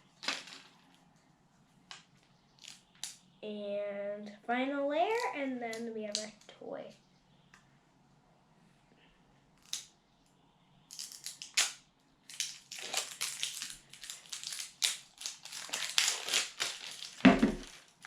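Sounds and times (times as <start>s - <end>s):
wrapping crinkling and crackling: 0.0s - 1.2s, 10.9s - 18.0s.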